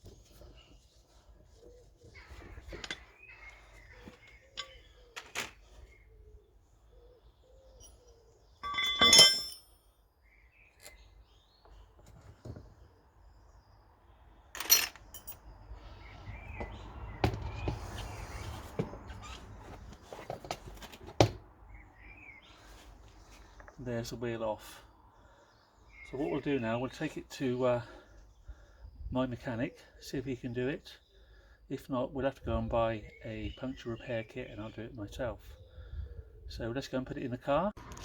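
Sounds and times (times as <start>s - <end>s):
birds chirping faintly: 0.0s - 37.8s
clanks and knocks of wheel removal: 8.6s - 9.6s, 16.6s - 17.8s
ringing metal clang: 8.6s - 9.8s.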